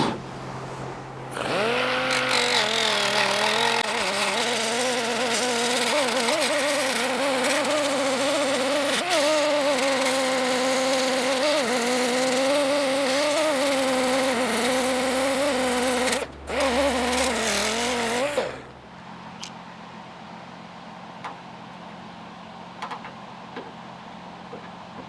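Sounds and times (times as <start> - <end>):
grinder on sheet metal: 1.3 - 18.7.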